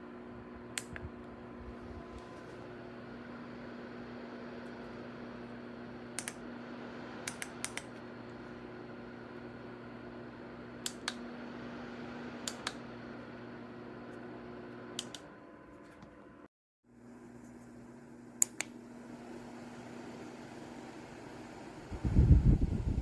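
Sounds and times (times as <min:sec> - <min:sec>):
tower fan humming: 0:00.0 - 0:15.6, 0:17.0 - 0:23.0
sharp clicks: 0:06.2 - 0:06.4, 0:07.3 - 0:07.9.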